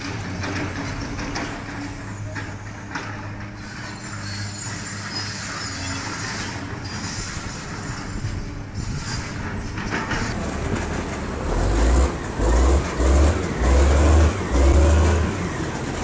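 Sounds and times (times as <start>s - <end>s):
heavy vehicle engine running: 0.0s - 16.0s
deep engine surges: 10.5s - 16.0s.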